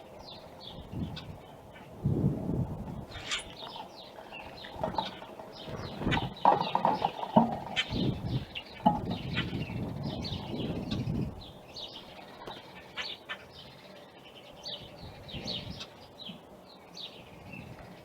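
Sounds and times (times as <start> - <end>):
birds chirping: 0.0 - 18.0
rustling: 3.0 - 8.3.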